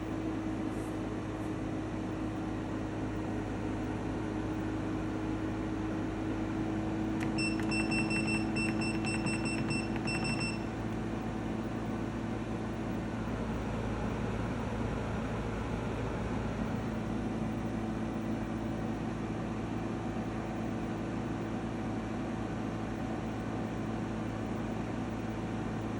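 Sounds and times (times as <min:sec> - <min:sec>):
air conditioner humming: 0:00.0 - 0:25.9
short high beeps: 0:07.2 - 0:10.7.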